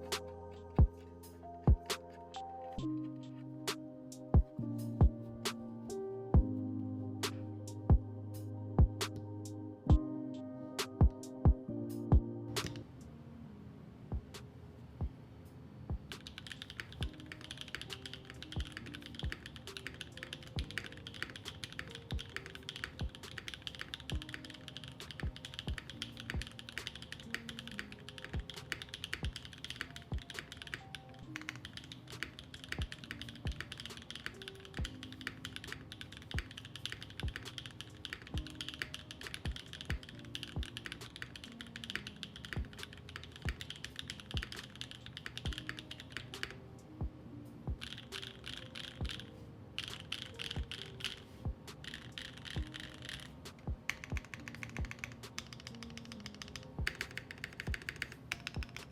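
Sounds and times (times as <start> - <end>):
background music: 0.0 - 58.9
mechanical keyboard typing: 12.6 - 12.8, 16.1 - 46.6, 47.8 - 58.9.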